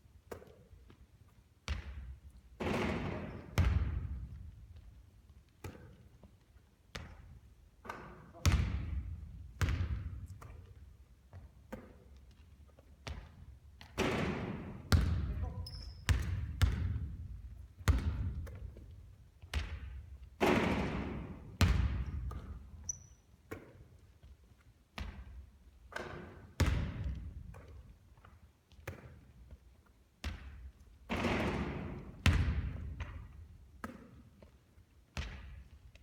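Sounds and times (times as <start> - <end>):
basketball thudding on court: 2.6 - 4.4, 13.9 - 17.2, 19.5 - 22.6, 30.2 - 34.1.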